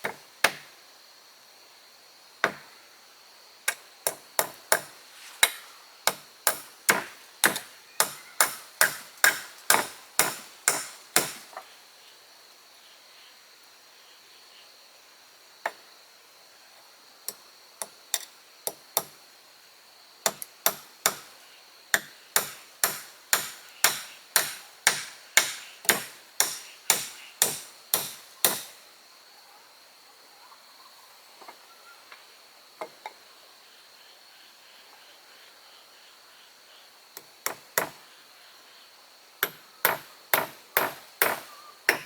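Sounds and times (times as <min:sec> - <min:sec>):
tool striking wood: 0:03.7 - 0:11.6, 0:20.3 - 0:21.3, 0:22.0 - 0:28.8, 0:39.4 - 0:42.0.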